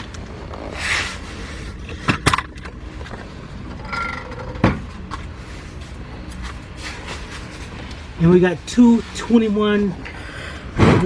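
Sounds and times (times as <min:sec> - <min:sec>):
metal tools clinking and knocking: 0:01.9 - 0:02.8, 0:03.7 - 0:04.8.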